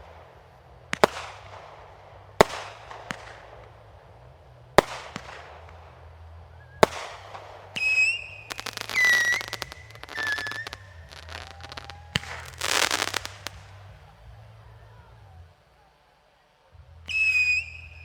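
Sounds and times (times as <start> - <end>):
firework bangs: 0.0 - 15.0, 17.1 - 18.0
firework crackling: 0.0 - 18.0
firework whistles: 4.8 - 13.9, 17.1 - 18.0.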